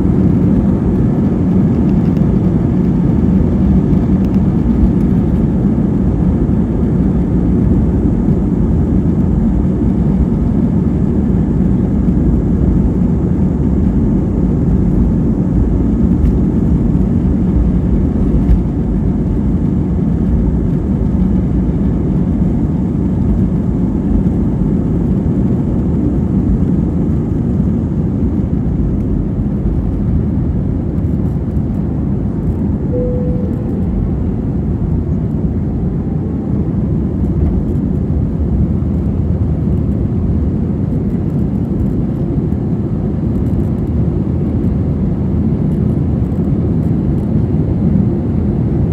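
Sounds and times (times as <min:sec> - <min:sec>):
airliner cabin rumble: 0:00.0 - 0:48.9
single tone: 0:32.9 - 0:34.8.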